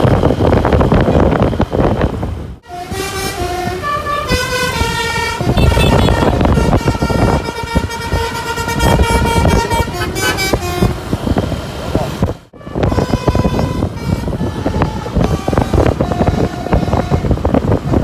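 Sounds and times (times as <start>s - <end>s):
bus engine and road rumble: 0.0s - 18.0s
multi-tone bus horn tune: 2.6s - 11.6s, 12.6s - 18.0s.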